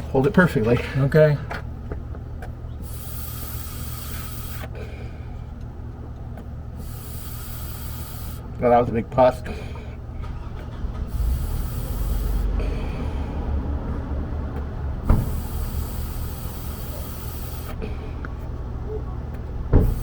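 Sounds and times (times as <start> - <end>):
breathy blowing and rustling: 2.8 - 5.6, 6.7 - 8.5, 9.5 - 14.1, 15.0 - 18.3
car engine idling: 9.3 - 20.0.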